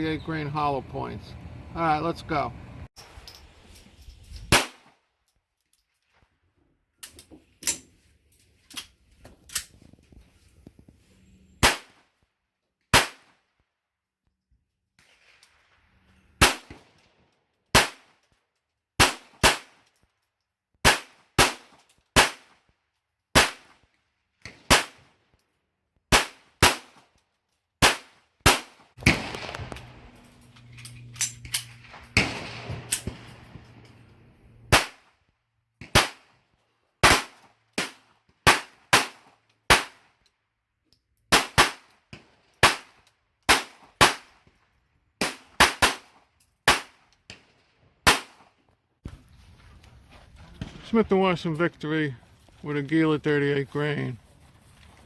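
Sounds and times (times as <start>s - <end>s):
pistol shots: 4.5s - 4.9s, 11.6s - 11.9s, 13.0s - 13.3s, 16.4s - 16.8s, 17.7s - 18.1s, 19.0s - 19.8s, 20.8s - 22.5s, 23.4s - 23.8s, 24.6s - 25.0s, 26.1s - 27.0s, 27.8s - 30.4s, 31.4s - 34.0s, 34.7s - 35.1s, 35.8s - 36.3s, 37.0s - 40.0s, 41.3s - 41.9s, 42.6s - 42.9s, 43.5s - 44.3s, 45.2s - 46.1s, 46.7s - 47.0s, 48.0s - 48.4s.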